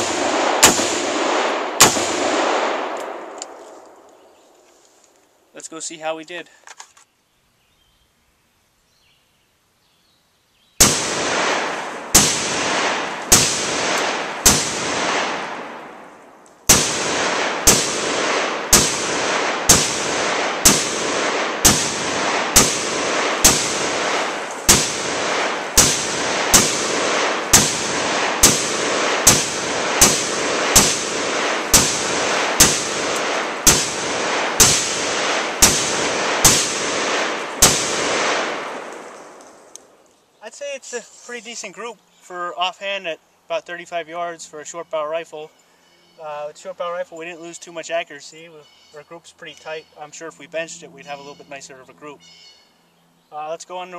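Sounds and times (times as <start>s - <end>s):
rifle shots with echo: 0.0s - 4.0s, 10.8s - 39.7s.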